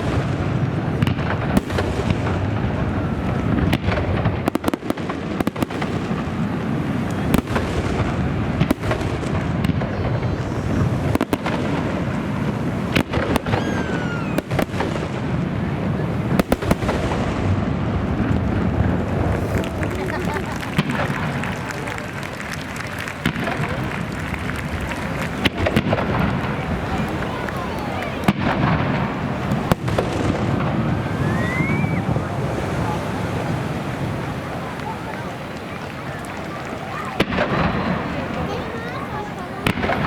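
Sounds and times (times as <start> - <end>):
fireworks bangs and crackles: 0.0 - 40.0
falling firework whistle: 12.9 - 15.0, 19.4 - 33.3.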